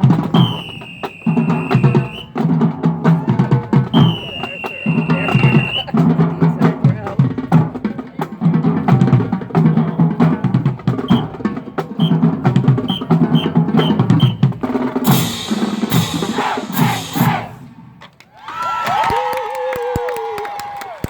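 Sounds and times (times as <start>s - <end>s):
bass drum notes: 0.0s - 18.0s
snare drums rattling: 0.0s - 18.2s
crashing cymbals: 15.0s - 17.9s.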